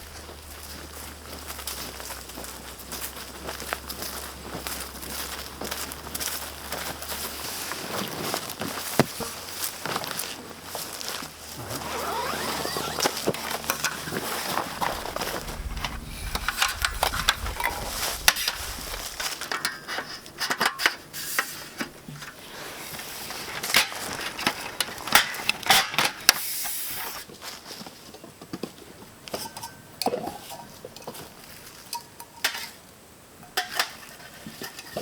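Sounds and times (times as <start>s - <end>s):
rustling and crinkling gear: 0.0s - 20.5s
low rumble: 11.6s - 19.5s.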